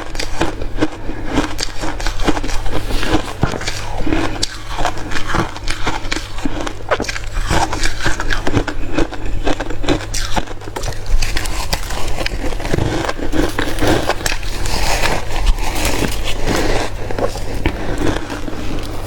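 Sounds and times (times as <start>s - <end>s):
chewing and crunching ice: 0.0s - 19.0s.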